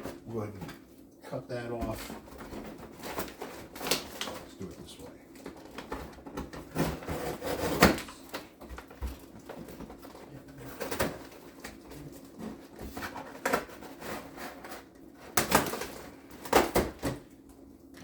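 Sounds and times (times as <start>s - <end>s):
cardboard box scraping and rustling: 6.7s - 8.0s.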